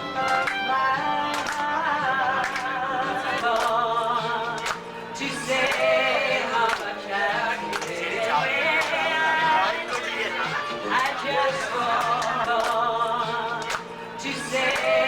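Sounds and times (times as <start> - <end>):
slow song: 0.0 - 15.0.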